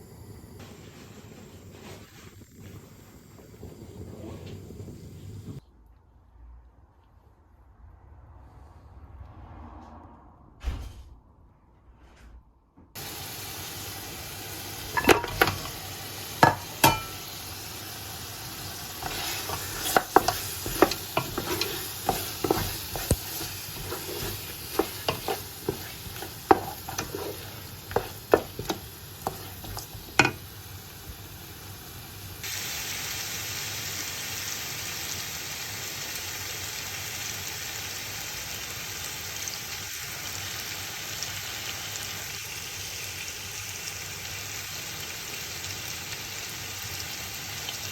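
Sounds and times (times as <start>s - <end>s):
food sizzling: 0.0s - 5.6s, 13.0s - 47.9s
spoon clanking against pot: 14.9s - 15.8s, 16.4s - 17.3s, 19.0s - 30.4s.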